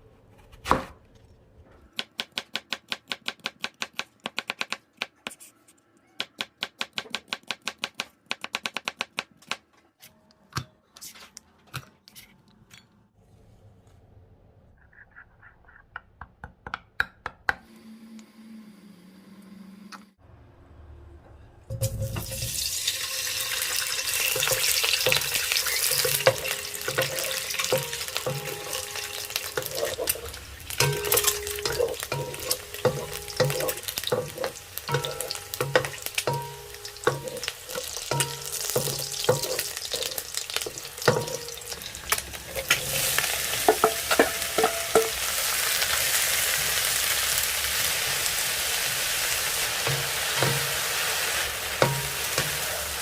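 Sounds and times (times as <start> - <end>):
food sizzling in a frying pan: 22.2 - 53.0
spatula scraping a pan: 24.2 - 40.2.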